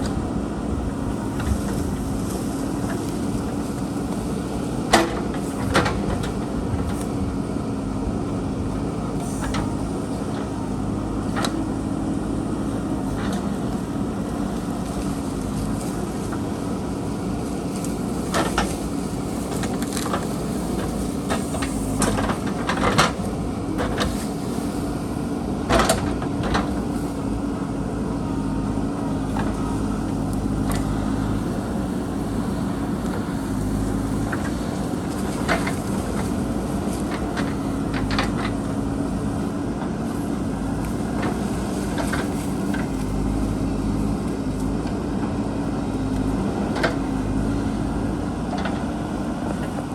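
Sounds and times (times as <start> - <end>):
diesel engine running: 0.0 - 49.9.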